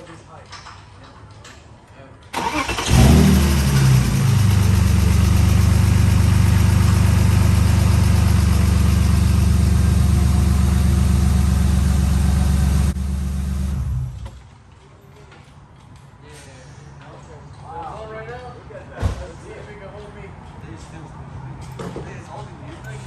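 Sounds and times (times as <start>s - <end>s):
car engine idling: 2.4s - 14.4s.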